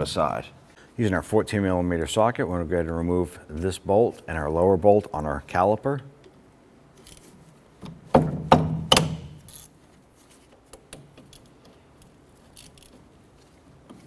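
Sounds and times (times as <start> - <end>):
socket wrench metallic knocks: 7.8 - 9.5.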